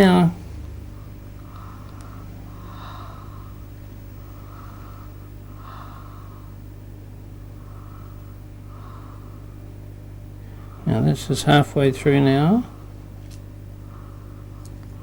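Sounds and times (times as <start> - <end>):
low electrical hum: 0.0 - 15.0
person breathing loudly: 0.9 - 6.7, 7.5 - 9.7, 13.8 - 15.0.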